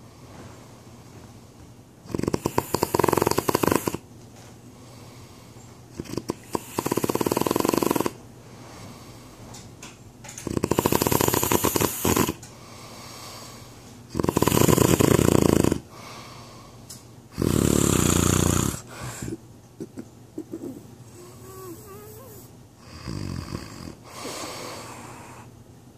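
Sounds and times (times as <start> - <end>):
man snoring: 2.1 - 4.0, 6.0 - 8.2, 10.5 - 12.4, 14.1 - 15.8, 17.3 - 19.4, 21.2 - 25.5
quiet breathing: 2.4 - 9.7, 11.0 - 14.1, 15.8 - 17.2, 18.7 - 19.5, 23.9 - 25.6.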